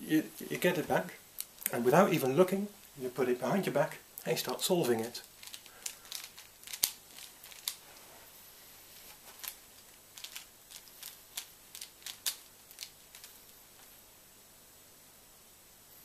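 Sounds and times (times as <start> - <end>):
puzzle cube layers clicking: 5.3 - 7.8, 9.4 - 13.3.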